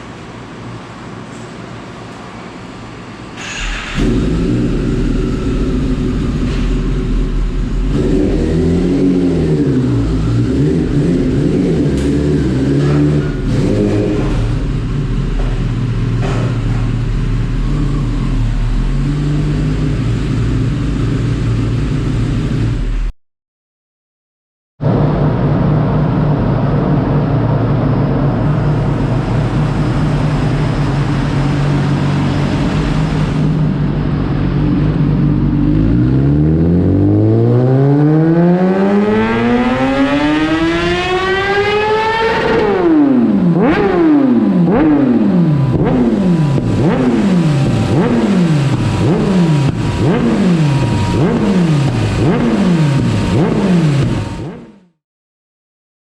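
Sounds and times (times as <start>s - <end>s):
motorcycle engine revving: 3.4s - 23.1s, 28.2s - 55.0s.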